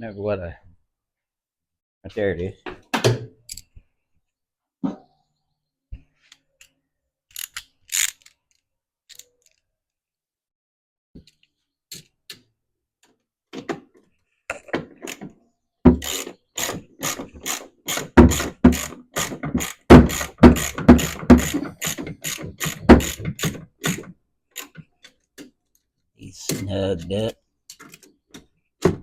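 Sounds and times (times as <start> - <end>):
socket ratchet clicking: 7.3 - 8.4, 16.0 - 24.8.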